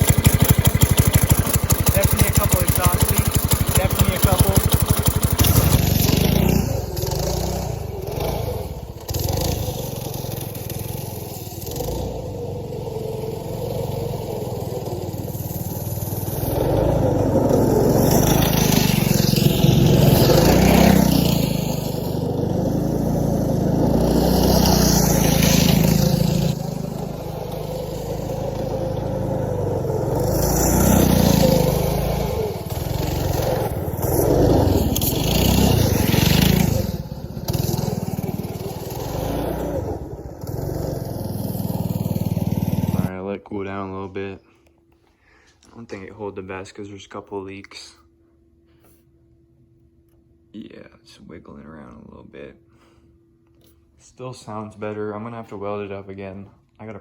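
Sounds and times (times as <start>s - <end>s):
go-kart engine revving: 0.0s - 43.1s.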